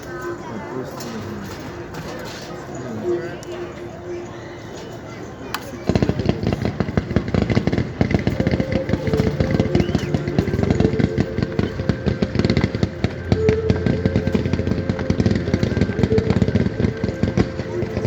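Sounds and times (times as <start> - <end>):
fireworks crackling pops: 5.5 - 18.0.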